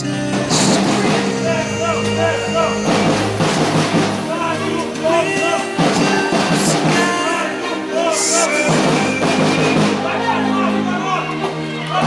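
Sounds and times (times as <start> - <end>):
background song: 0.0 - 12.0.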